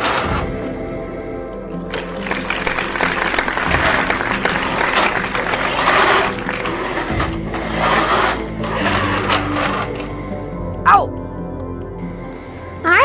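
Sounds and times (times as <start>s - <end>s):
toy truck mechanism rattling: 0.0s - 0.9s, 3.1s - 10.5s
background music: 0.0s - 13.0s.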